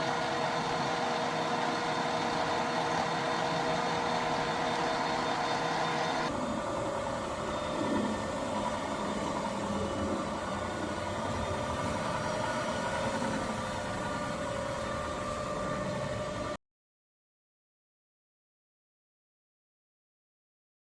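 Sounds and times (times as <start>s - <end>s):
lathe mechanical hum: 0.0s - 16.6s.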